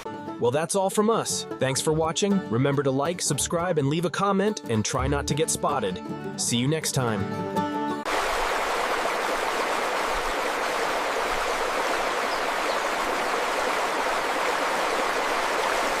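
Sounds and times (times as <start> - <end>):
rushing water: 8.1 - 16.0.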